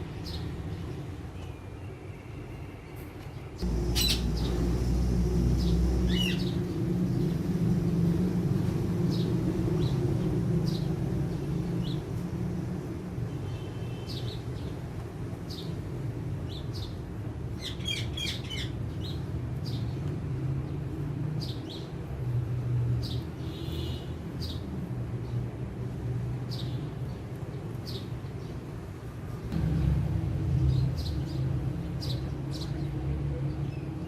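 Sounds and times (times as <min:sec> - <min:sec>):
parrots chirping: 0:03.6 - 0:06.7
low steady rumble: 0:03.6 - 0:13.0, 0:29.5 - 0:32.0.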